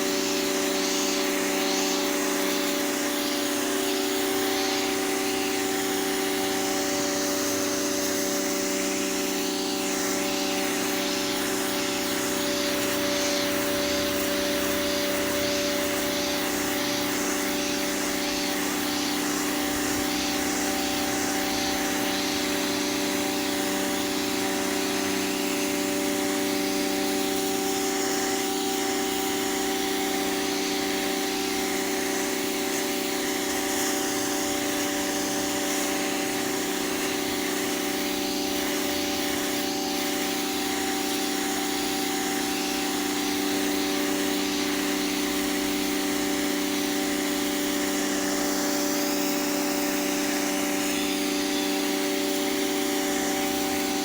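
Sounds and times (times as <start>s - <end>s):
pressure washer motor hum: 0.0s - 54.0s
water jet spraying pavement: 0.0s - 54.0s.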